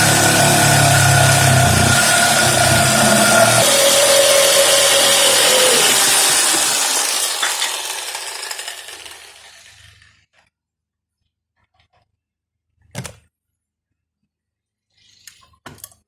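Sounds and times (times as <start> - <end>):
power tool motor spinning down: 0.0 - 10.2.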